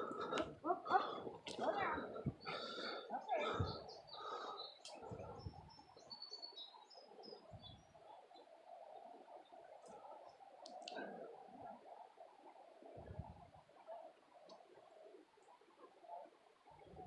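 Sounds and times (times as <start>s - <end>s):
faint birdsong chirps: 0.0s - 17.0s.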